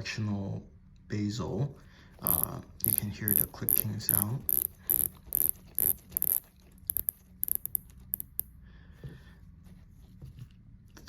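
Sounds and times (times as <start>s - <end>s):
watch bezel ratchet clicks: 2.2s - 8.5s.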